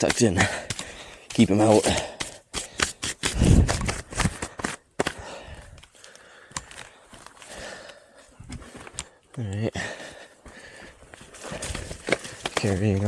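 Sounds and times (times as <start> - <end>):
heavy breath on microphone: 1.9 - 9.2, 9.8 - 12.5
clothing and gear rustling: 10.5 - 13.0.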